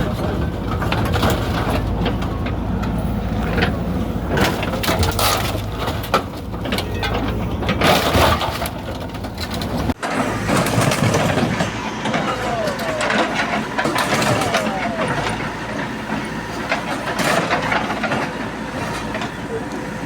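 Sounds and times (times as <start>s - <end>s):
engine running steadily: 0.0s - 20.0s
crashing and clattering impacts: 4.3s - 19.2s.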